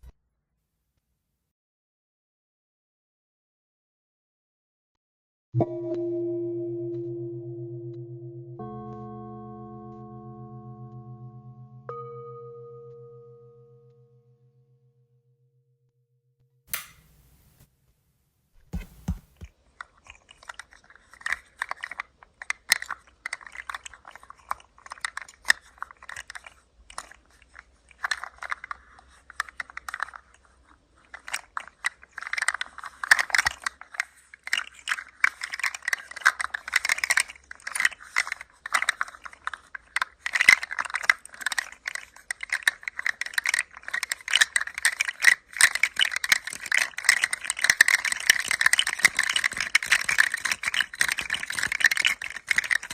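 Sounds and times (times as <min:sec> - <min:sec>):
rattle toy clicking: 0:31.1 - 0:52.9.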